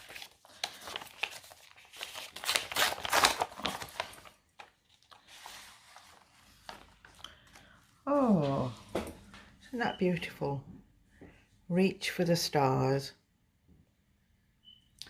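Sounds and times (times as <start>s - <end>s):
wrapping crinkling and tearing: 0.0s - 7.8s.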